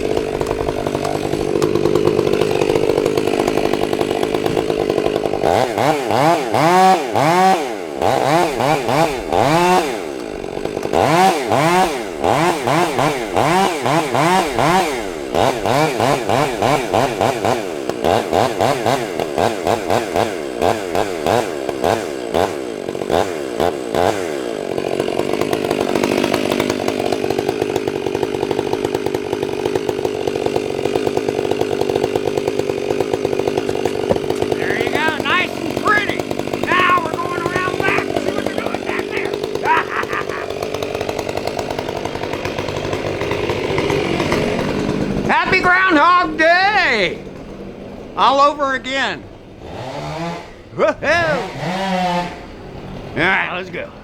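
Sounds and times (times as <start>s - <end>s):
chainsaw revving: 0.0s - 54.0s.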